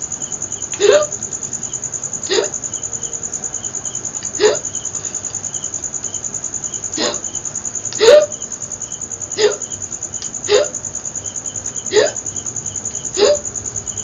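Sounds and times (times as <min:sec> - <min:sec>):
cricket trilling: 0:00.0 - 0:14.0
woman hiccupping: 0:00.8 - 0:01.2, 0:02.2 - 0:02.6, 0:04.2 - 0:04.7, 0:07.0 - 0:07.3, 0:07.9 - 0:08.4, 0:09.4 - 0:09.7, 0:10.5 - 0:10.8, 0:11.9 - 0:12.2, 0:13.2 - 0:13.5.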